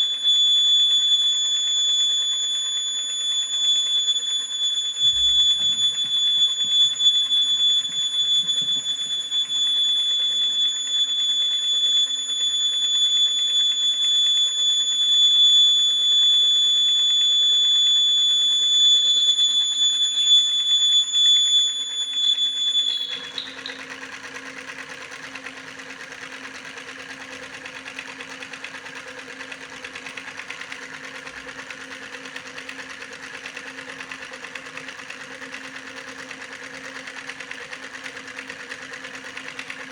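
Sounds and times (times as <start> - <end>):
small motor whirring: 0.0 - 19.1
high-pitched electronic buzzer: 4.6 - 10.3, 20.2 - 23.9.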